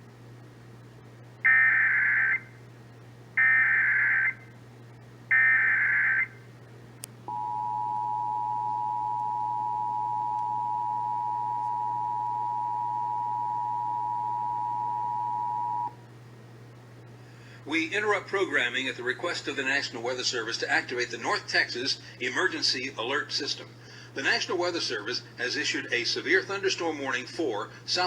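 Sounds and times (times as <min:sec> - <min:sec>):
two-tone attention signal: 0:07.3 - 0:15.9.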